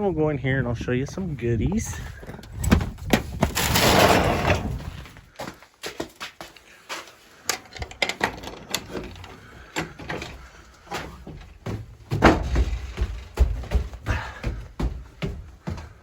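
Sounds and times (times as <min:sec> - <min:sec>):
barn door knocks and scrapes: 0:02.6 - 0:05.0, 0:11.0 - 0:13.9.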